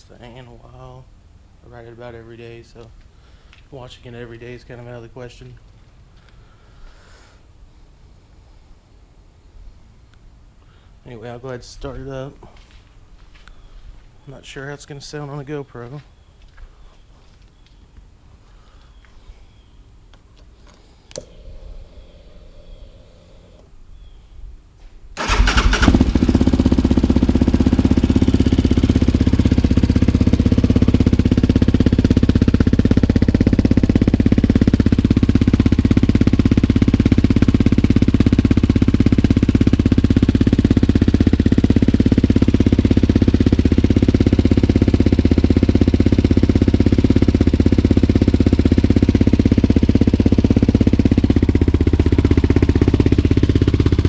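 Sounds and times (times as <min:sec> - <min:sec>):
person talking: 0:00.0 - 0:03.0, 0:11.0 - 0:12.6, 0:14.2 - 0:16.1
engine starting and idling: 0:25.2 - 0:29.2.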